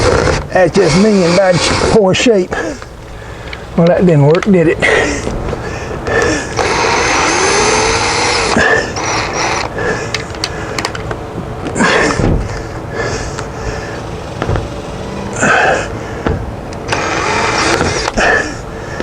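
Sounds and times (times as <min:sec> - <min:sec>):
cordless drill driving screw: 0:00.0 - 0:02.0, 0:06.2 - 0:10.5, 0:16.8 - 0:18.6
drill clicks: 0:06.1 - 0:11.2, 0:16.7 - 0:19.0.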